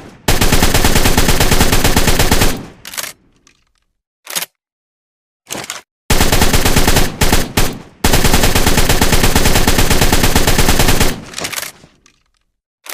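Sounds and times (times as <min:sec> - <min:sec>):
assault rifle automatic fire: 0:00.2 - 0:02.8, 0:06.1 - 0:11.3.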